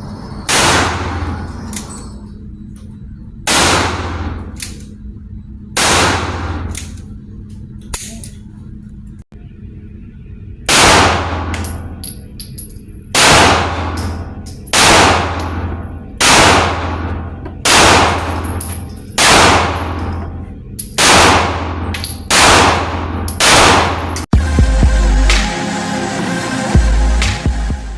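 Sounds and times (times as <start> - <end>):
gunshots with ringing echo: 0.5 - 1.3, 3.5 - 4.4, 5.8 - 6.7, 10.7 - 12.0, 13.1 - 18.6, 19.2 - 20.2, 21.0 - 24.2.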